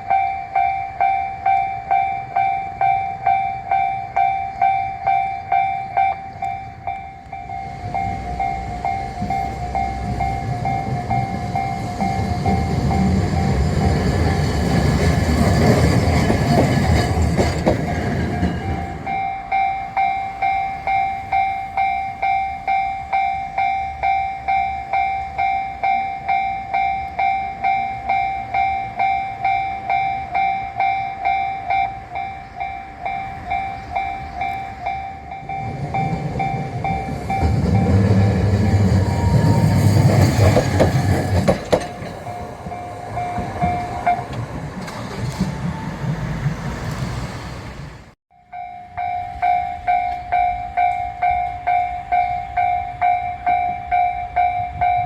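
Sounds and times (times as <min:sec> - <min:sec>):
level crossing electronic bell: 0:00.0 - 0:13.7, 0:19.0 - 0:38.5
train rumbling: 0:00.0 - 0:55.0.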